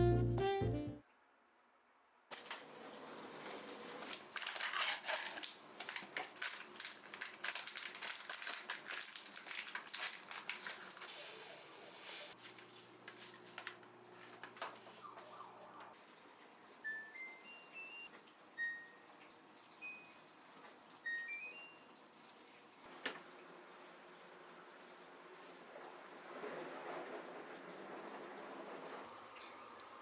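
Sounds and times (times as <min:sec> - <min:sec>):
handling clicks crunches and rustles: 0:04.1 - 0:11.0.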